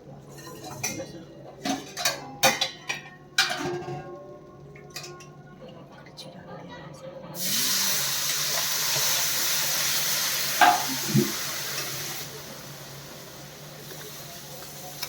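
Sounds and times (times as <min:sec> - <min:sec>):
water sizzling in hot pan: 0:07.4 - 0:15.0.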